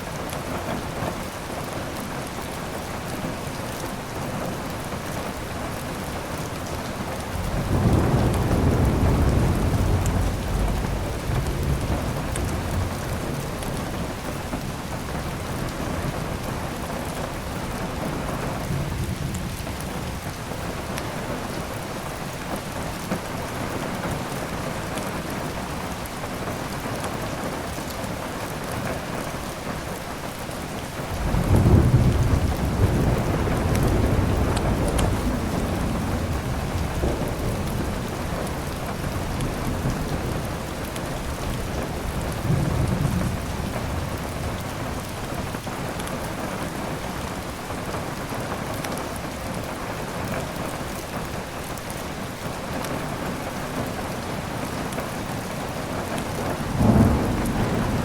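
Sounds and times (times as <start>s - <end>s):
heavy rain: 0.0s - 58.0s
thunder rumbling: 5.4s - 20.4s, 31.1s - 48.0s, 56.2s - 58.0s.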